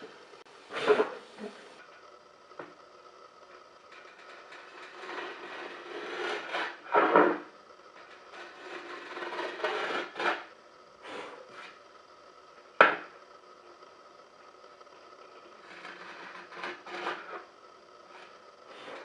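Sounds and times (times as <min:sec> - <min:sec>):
wood being rasped by hand: 0:04.0 - 0:06.8, 0:08.0 - 0:10.5, 0:15.6 - 0:17.5.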